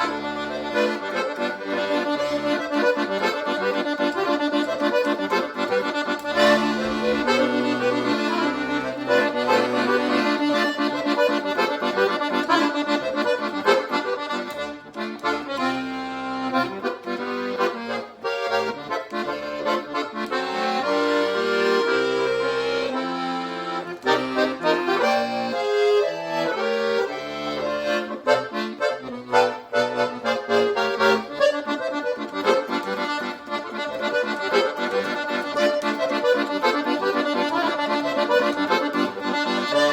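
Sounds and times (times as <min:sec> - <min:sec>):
accordion melody: 0:00.0 - 0:39.9.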